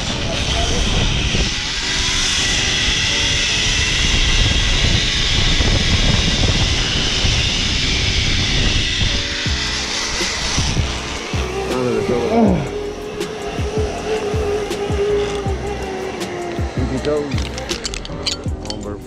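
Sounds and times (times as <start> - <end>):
zip-line trolley whirring on cable: 0.0 - 18.5
wind buffeting microphone: 0.0 - 19.0.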